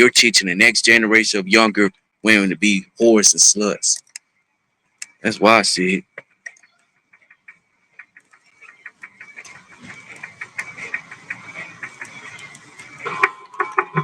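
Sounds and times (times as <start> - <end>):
rapid clicking and rattling: 6.0 - 14.0.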